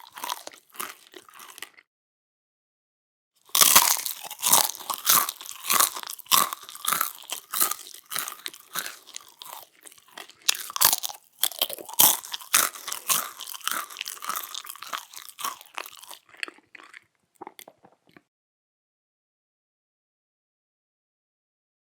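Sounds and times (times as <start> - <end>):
person chewing crunchy waffle: 0.0 - 1.9, 3.4 - 18.3.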